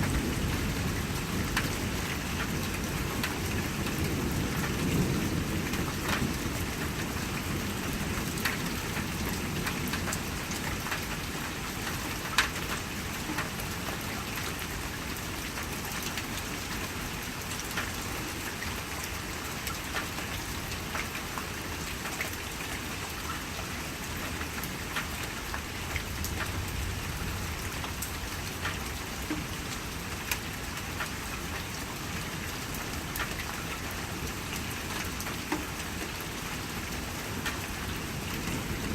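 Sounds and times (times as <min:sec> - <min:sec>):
steady rain: 0:00.0 - 0:38.9
thunder rumble: 0:26.0 - 0:28.4.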